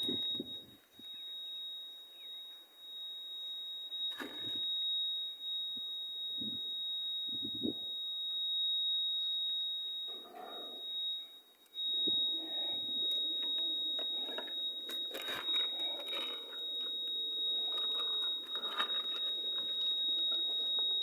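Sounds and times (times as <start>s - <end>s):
high-pitched electronic tone: 11.9s - 21.0s.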